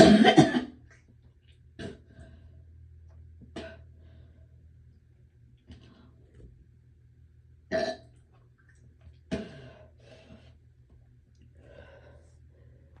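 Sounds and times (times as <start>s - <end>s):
person retching burps: 0.0s - 0.8s, 1.8s - 2.0s, 7.7s - 8.1s
person breathing: 9.5s - 10.6s, 11.5s - 13.0s.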